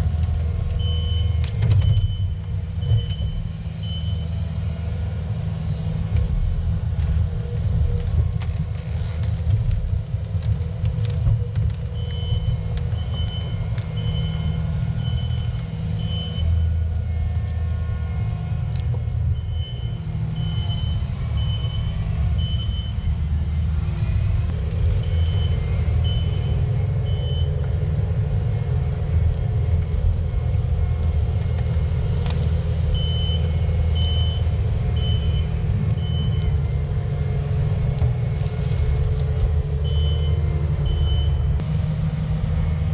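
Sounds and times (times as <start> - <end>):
diesel engine under load: 0.0 - 42.9
backup alarm beeping: 12.0 - 16.6, 24.9 - 27.5, 33.0 - 36.6, 39.8 - 41.6.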